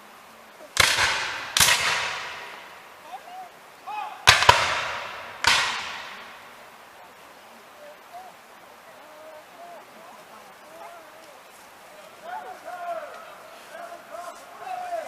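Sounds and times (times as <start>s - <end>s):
musket shots echoing: 0.8s - 2.9s, 4.3s - 6.6s.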